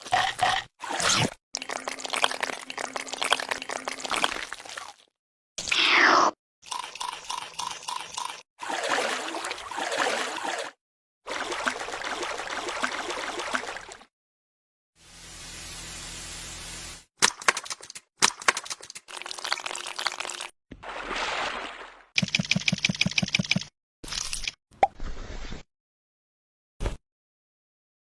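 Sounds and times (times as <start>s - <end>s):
water splashing and pouring: 0.0s - 5.2s, 6.6s - 14.1s, 18.6s - 22.2s.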